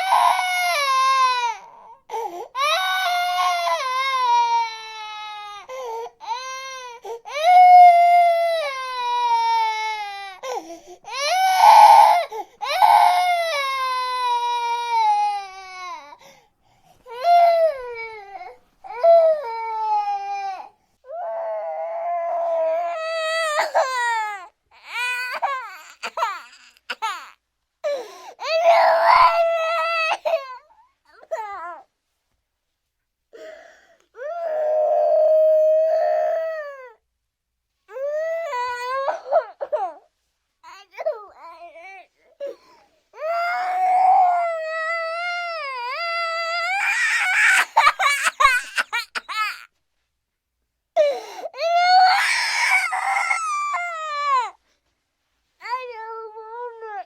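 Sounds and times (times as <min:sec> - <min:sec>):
child crying: 0:21.2 - 0:27.4, 0:28.4 - 0:30.6, 0:43.2 - 0:49.7, 0:51.6 - 0:54.5.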